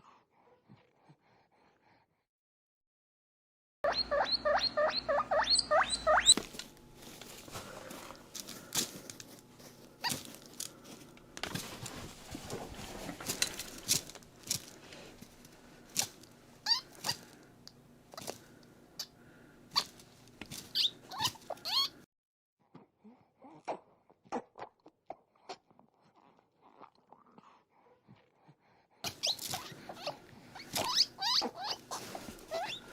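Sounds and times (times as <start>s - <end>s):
guinea pig squeaky chirps: 3.8s - 6.4s, 16.0s - 17.3s, 20.7s - 22.0s, 29.1s - 32.9s
guinea pig clicking: 3.9s - 6.4s.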